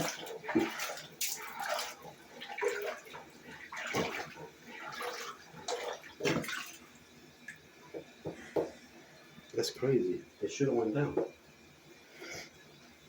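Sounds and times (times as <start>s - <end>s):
water running and splashing: 0.0s - 9.8s.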